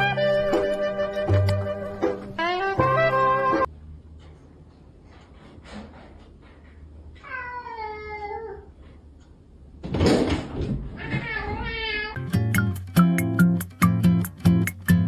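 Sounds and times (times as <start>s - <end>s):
cat meowing: 7.2s - 8.7s, 11.0s - 12.2s.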